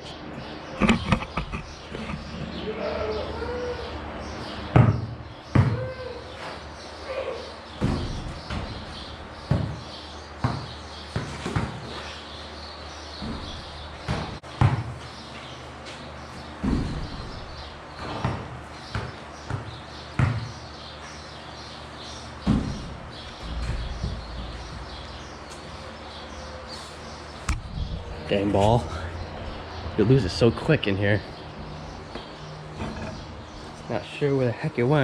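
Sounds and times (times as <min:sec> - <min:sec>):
basketball bouncing: 0:04.7 - 0:05.9, 0:07.8 - 0:11.8, 0:13.2 - 0:15.0, 0:16.6 - 0:17.3, 0:18.0 - 0:20.6, 0:22.4 - 0:25.0.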